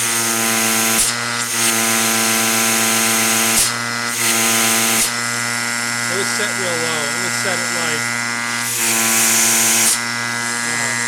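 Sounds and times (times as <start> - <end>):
electric motor hum and whine: 0.0 - 11.0.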